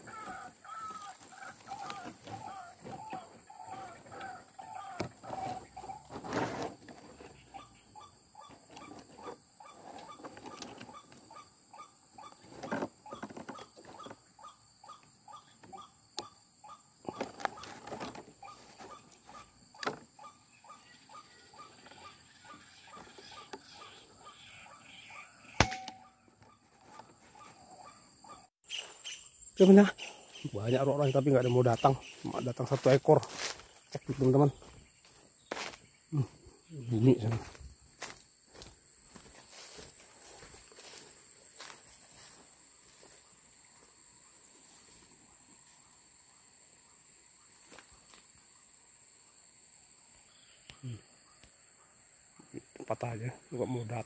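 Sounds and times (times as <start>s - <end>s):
high insect drone: 0.0s - 26.2s, 28.8s - 54.0s
birds calling in short notes: 7.2s - 37.4s.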